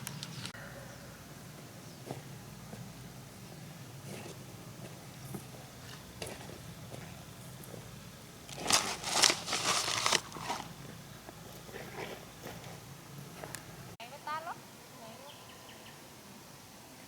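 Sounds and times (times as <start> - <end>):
crinkling rustling: 8.5 - 10.8.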